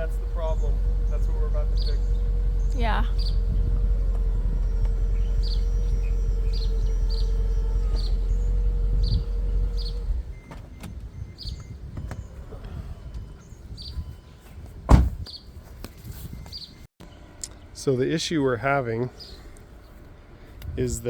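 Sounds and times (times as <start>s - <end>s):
hydraulic pump motor humming: 0.0s - 10.4s
birds chirping: 0.0s - 20.6s
loud thump: 14.9s - 15.2s.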